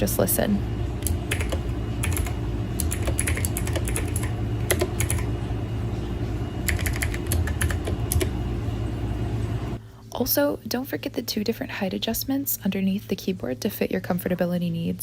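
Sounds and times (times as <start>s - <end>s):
mechanical keyboard typing: 1.0s - 5.3s, 6.6s - 8.3s.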